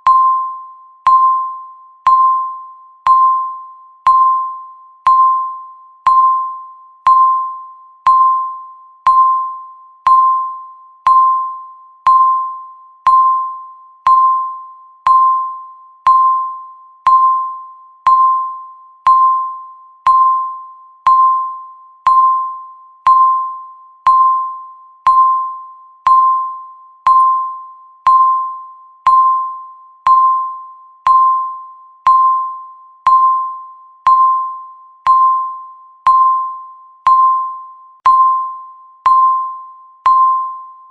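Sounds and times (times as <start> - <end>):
countdown timer beeping: 0.0 - 40.9.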